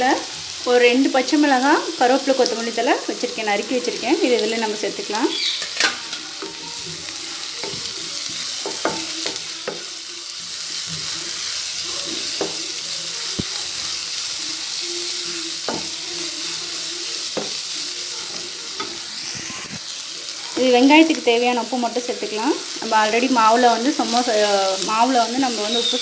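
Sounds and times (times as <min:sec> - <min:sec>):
onions sizzling in hot oil: 0:00.0 - 0:26.0.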